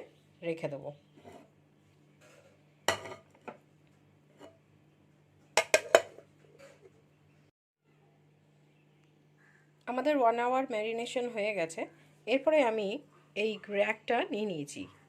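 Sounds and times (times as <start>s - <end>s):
dishes clinking: 2.3s - 3.6s, 5.6s - 6.8s
bowl knocking: 5.6s - 6.2s.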